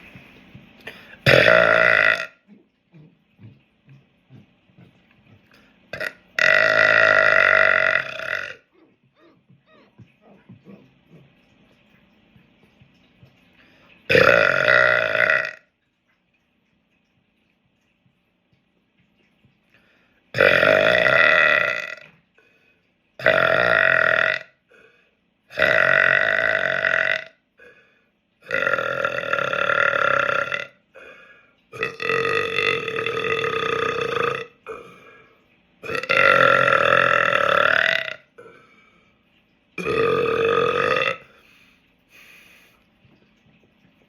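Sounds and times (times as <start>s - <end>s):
man belching: 0.9s - 2.6s, 3.4s - 9.3s, 14.1s - 15.7s, 20.4s - 22.1s, 23.2s - 24.6s, 25.5s - 27.4s, 28.4s - 31.1s, 31.8s - 35.0s, 35.8s - 38.6s, 39.8s - 41.3s.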